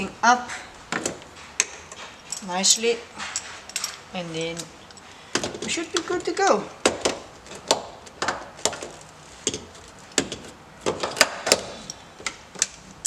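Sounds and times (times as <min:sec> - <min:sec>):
tools clicking and knocking: 0:03.2 - 0:12.8.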